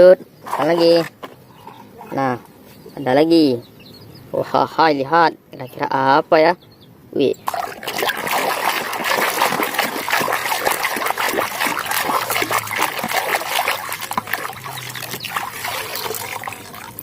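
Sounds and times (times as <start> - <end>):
water splashing and trickling: 7.4 - 17.0.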